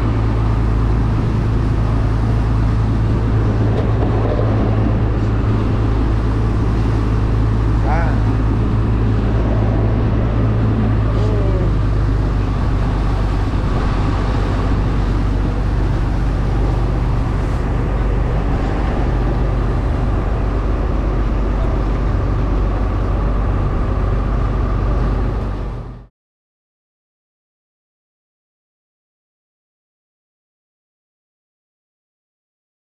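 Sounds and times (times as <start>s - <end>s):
boat engine running: 0.0s - 26.1s
water noise: 0.0s - 26.1s
wind: 0.0s - 26.1s.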